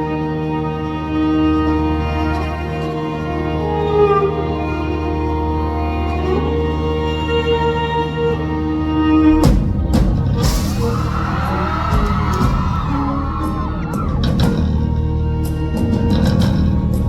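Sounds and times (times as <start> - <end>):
live rock band playing: 9.4 - 15.1
audience screaming: 10.3 - 15.2.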